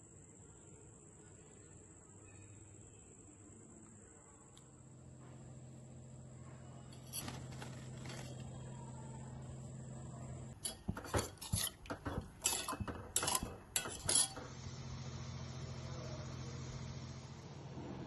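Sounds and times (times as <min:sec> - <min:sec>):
steady low hum: 0:00.0 - 0:18.0
metal spoon scraping metal pot: 0:10.6 - 0:14.5.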